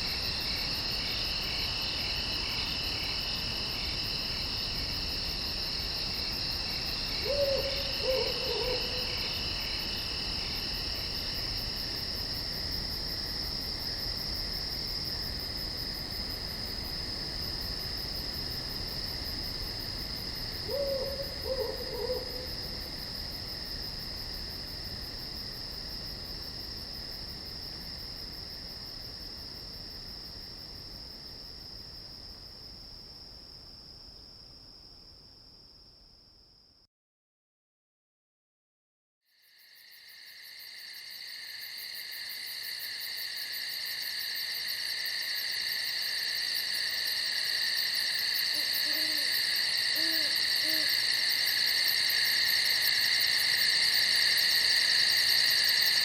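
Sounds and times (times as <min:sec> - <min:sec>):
crickets trilling: 0:00.0 - 0:33.3, 0:39.4 - 0:56.0
lower insect trill: 0:00.0 - 0:33.6, 0:39.3 - 0:56.0
low hooting call: 0:07.2 - 0:09.2, 0:20.7 - 0:22.5, 0:48.5 - 0:51.0.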